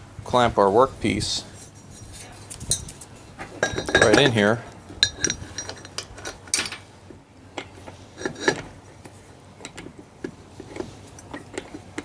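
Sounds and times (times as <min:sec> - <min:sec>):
metal clinks and knocks: 0:01.5 - 0:07.0, 0:07.6 - 0:08.8
loud metal clanks: 0:02.7 - 0:06.9.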